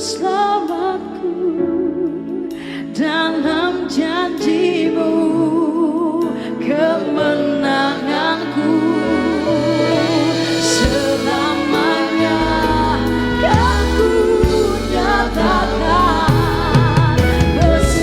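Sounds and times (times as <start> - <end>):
keyboard chords: 0.0 - 18.0
singers with vibrato: 0.0 - 18.0
bass: 8.6 - 18.0.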